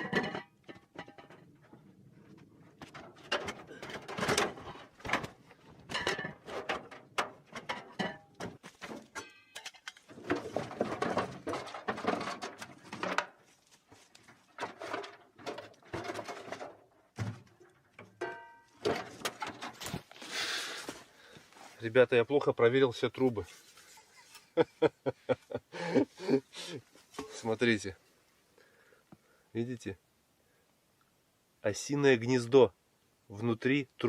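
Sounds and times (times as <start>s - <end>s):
metal pipe knocks and clanks: 0.0s - 1.8s, 5.9s - 13.4s, 17.9s - 19.8s.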